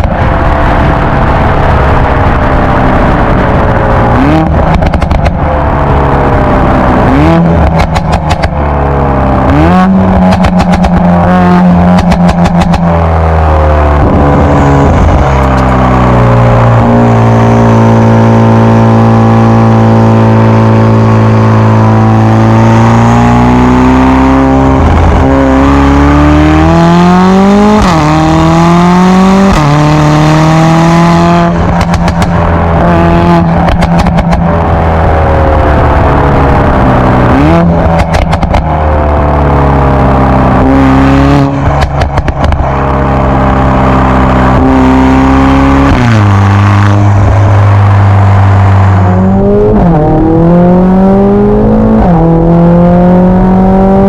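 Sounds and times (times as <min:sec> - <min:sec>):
exhaust pops and crackles: 0:00.0 - 0:13.2, 0:31.4 - 0:44.9
car engine revving: 0:00.0 - 0:54.0.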